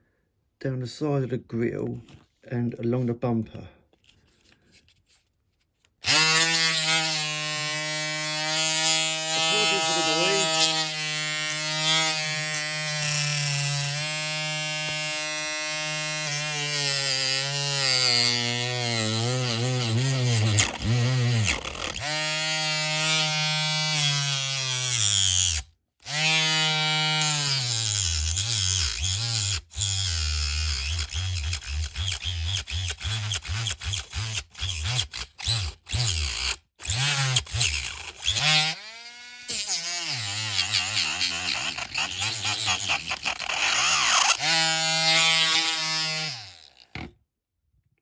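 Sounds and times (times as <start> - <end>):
rotary tool cutting metal: 6.0 - 47.1.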